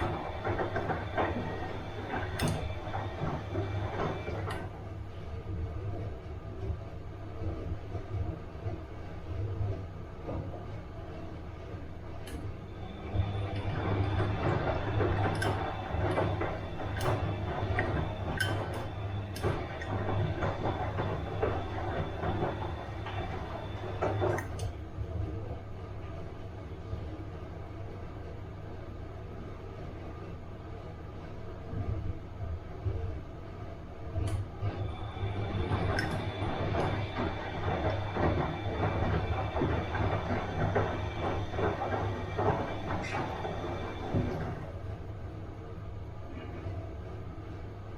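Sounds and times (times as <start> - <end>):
drum clatter and swish of laundry: 0.0 - 5.1, 6.1 - 25.2, 34.2 - 45.1
washing machine motor hum: 0.0 - 47.9.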